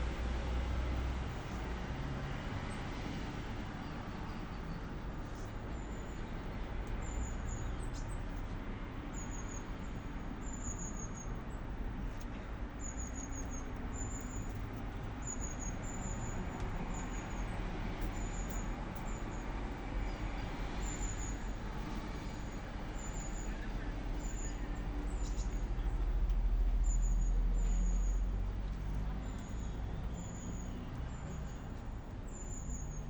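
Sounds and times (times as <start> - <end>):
street traffic rumble: 0.0 - 33.0.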